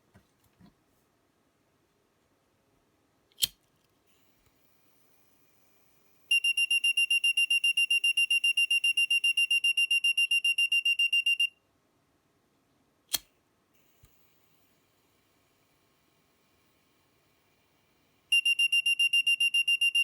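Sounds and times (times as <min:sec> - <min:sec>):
sharp click: 0:03.3 - 0:03.6, 0:13.1 - 0:13.3
buzzer beeping rapidly: 0:18.3 - 0:20.0.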